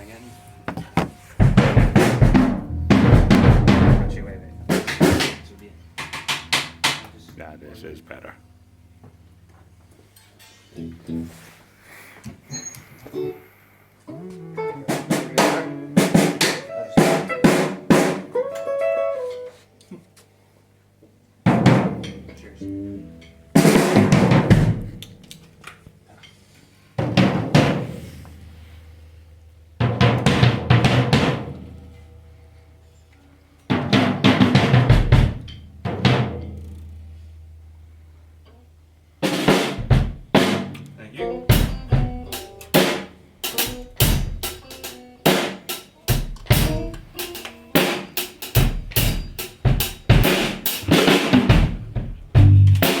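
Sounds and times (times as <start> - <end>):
drum kit hits: 0.0 - 7.6, 14.9 - 18.3, 21.5 - 22.6, 23.5 - 25.2, 27.0 - 28.8, 29.8 - 32.1, 33.7 - 37.7, 39.2 - 40.8, 41.4 - 53.0
bluesy guitar phrase: 0.0 - 9.6, 13.1 - 16.0, 22.3 - 24.2, 41.1 - 42.8, 52.4 - 53.0
low steady hum: 0.0 - 11.4.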